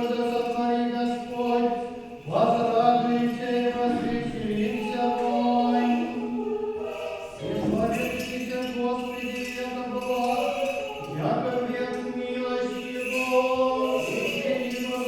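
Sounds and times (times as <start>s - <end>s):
choir singing chant: 0.0s - 15.0s
choir breath: 5.6s - 7.5s.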